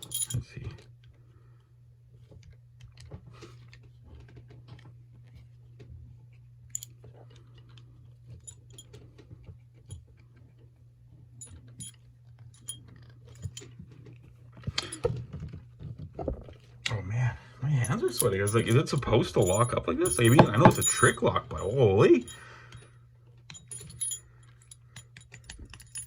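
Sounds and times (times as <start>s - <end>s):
steady low hum: 16.2s - 26.0s
handling noise: 17.8s - 22.4s.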